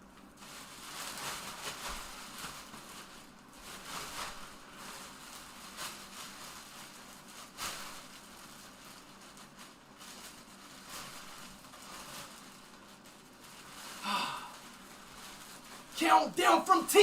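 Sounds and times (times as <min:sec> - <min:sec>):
soft rustling and handling: 0:00.1 - 0:16.0.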